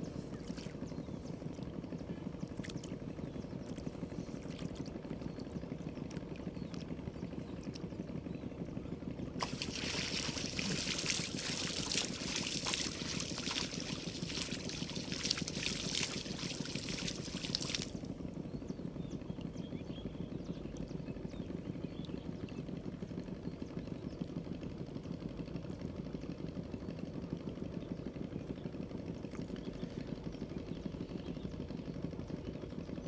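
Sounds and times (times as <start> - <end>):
steady low rumble: 0.0 - 25.9
water splashing and trickling: 0.4 - 0.8, 9.4 - 18.1.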